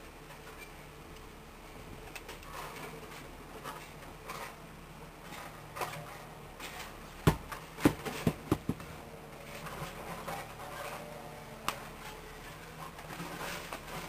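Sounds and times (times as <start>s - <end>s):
sharp knocks: 7.2s - 8.9s.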